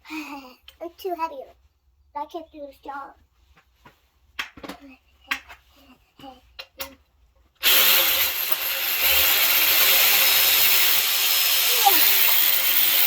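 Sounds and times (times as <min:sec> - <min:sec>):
cordless ratchet spinning: 0:07.6 - 0:13.0.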